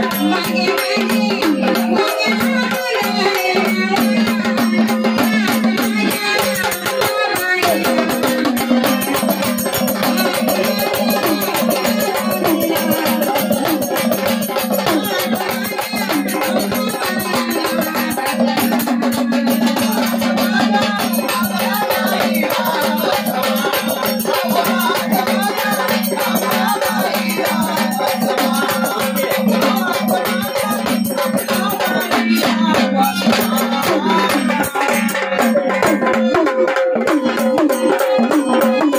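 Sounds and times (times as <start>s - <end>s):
rattling percussion and drums: 0.0s - 38.9s
wavering melody: 33.2s - 38.9s.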